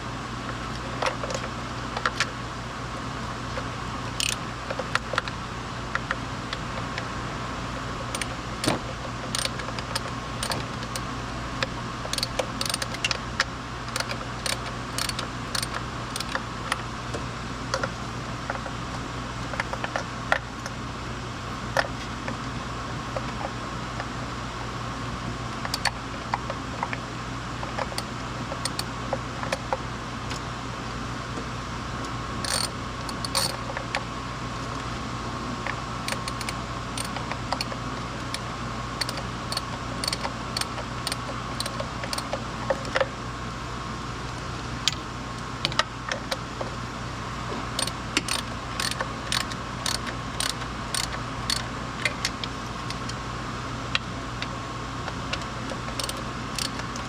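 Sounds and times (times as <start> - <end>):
steady background hum: 0.0 - 57.0
metal tools clicking and clinking: 32.4 - 33.6.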